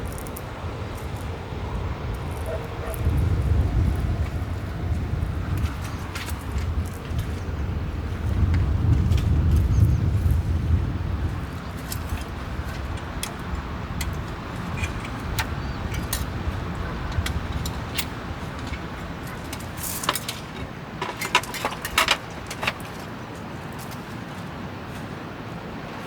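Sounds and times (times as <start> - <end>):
steady low rumble: 0.0 - 23.0
rattling: 11.8 - 23.1.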